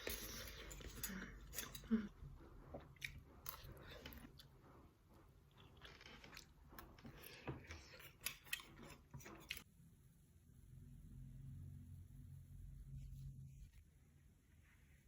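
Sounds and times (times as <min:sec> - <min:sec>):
soft chewing: 0:00.0 - 0:09.7
low steady hum: 0:00.0 - 0:15.0.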